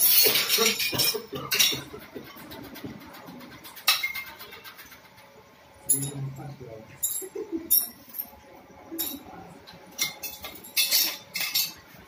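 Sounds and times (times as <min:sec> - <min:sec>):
hard objects clinking and rattling: 0:00.0 - 0:05.1.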